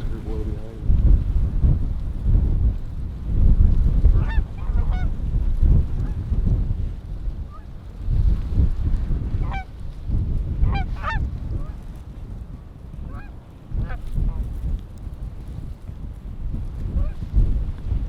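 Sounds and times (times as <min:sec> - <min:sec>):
wind buffeting microphone: 0:00.0 - 0:18.0
geese honking: 0:04.2 - 0:05.1, 0:09.4 - 0:09.7, 0:10.6 - 0:11.2.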